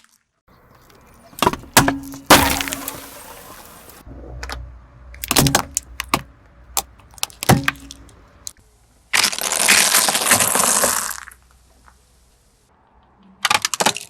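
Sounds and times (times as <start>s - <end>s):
hard objects cracking under tyre: 0.5s - 4.0s, 5.2s - 12.0s, 13.3s - 14.0s.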